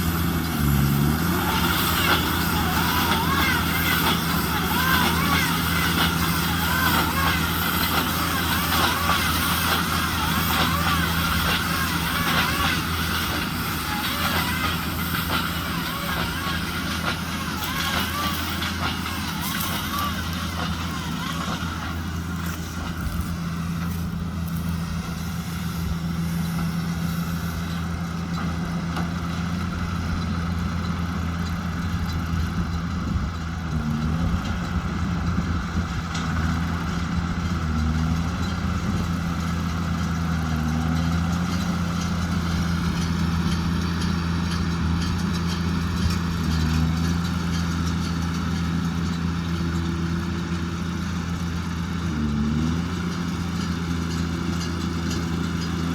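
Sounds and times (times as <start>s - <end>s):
tractor engine running: 0.0s - 55.9s.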